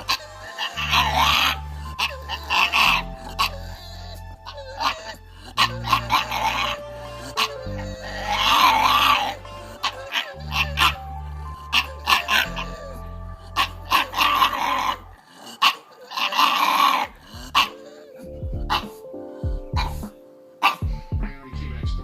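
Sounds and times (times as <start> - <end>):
dog barking and yipping: 0.0 - 11.0, 11.6 - 18.1, 18.7 - 19.0, 19.8 - 20.0, 20.6 - 20.9
background music with bass beat: 0.0 - 15.2, 17.1 - 20.2, 20.8 - 22.0.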